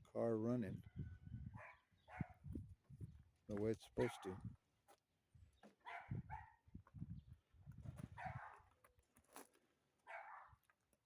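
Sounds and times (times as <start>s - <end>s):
faint dog barking: 4.0s - 4.4s, 5.9s - 6.6s, 8.2s - 8.6s, 10.1s - 10.6s.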